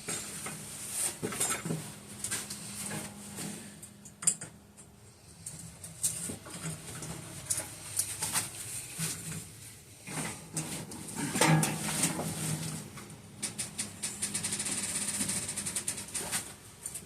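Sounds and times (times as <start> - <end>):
objects knocking and clattering: 10.1 - 12.8.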